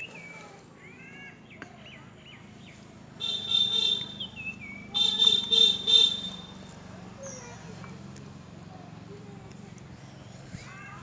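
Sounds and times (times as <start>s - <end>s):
vehicle horn beeping: 3.2s - 4.3s, 5.0s - 6.7s.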